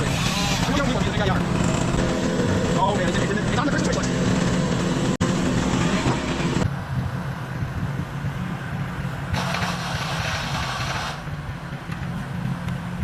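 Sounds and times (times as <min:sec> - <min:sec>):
engine running steadily: 0:00.0 - 0:13.0
rushing noise: 0:09.4 - 0:11.4.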